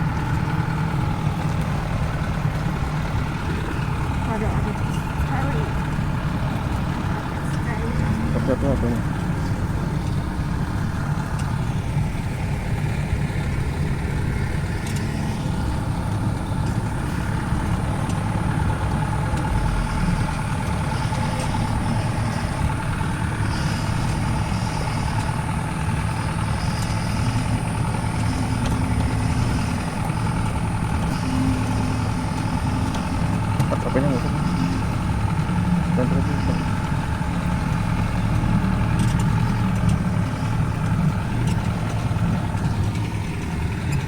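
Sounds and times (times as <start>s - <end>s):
faint steady whine: 0.0s - 44.0s
vehicle engine running at low speed: 0.0s - 44.0s.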